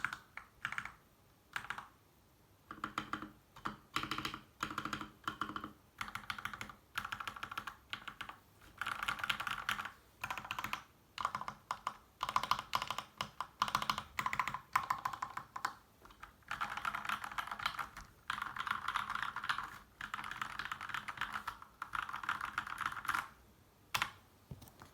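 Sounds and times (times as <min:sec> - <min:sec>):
typing on mechanical keyboard: 0:00.0 - 0:02.0, 0:02.7 - 0:24.2.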